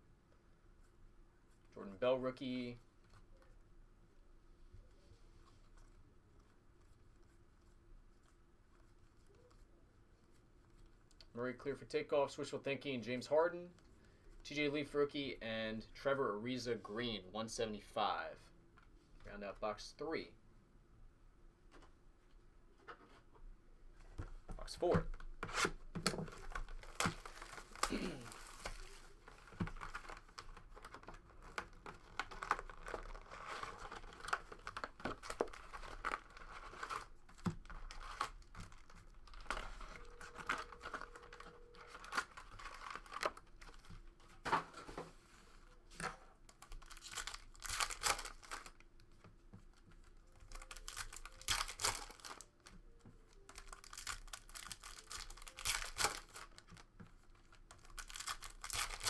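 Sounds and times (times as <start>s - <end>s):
wrappers tearing and crinkling: 25.5s - 43.9s, 46.5s - 48.8s, 50.1s - 59.0s.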